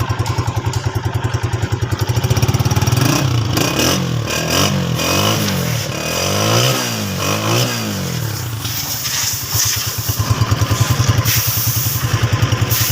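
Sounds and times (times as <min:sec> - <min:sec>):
motorcycle engine revving and idling: 0:00.0 - 0:12.9.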